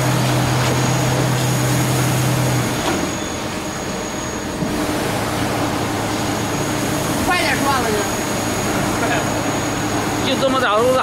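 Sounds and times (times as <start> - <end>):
lathe machine drone with whine: 0.0 - 11.0.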